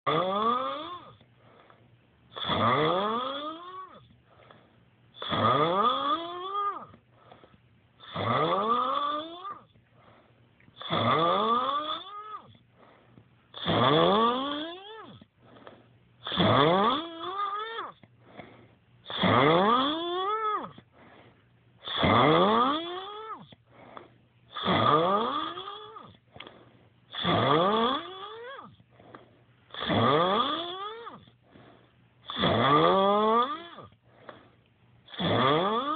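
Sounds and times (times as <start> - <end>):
whistling snores: 0.1 - 1.2, 2.3 - 4.1, 5.2 - 6.9, 8.0 - 9.7, 10.8 - 12.6, 13.6 - 15.2, 16.2 - 18.0, 19.1 - 20.8, 21.8 - 23.5, 24.5 - 26.2, 27.1 - 28.7, 29.7 - 31.3, 32.2 - 33.9, 35.1 - 35.9.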